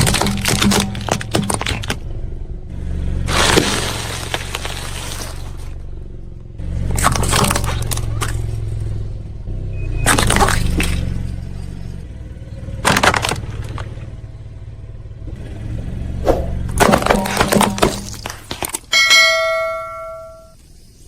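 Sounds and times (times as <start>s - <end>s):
tyre crushing objects: 0.0s - 2.0s, 3.2s - 5.8s, 6.9s - 8.5s, 10.1s - 11.1s, 12.8s - 14.0s, 16.3s - 19.3s
car engine idling: 0.0s - 21.0s.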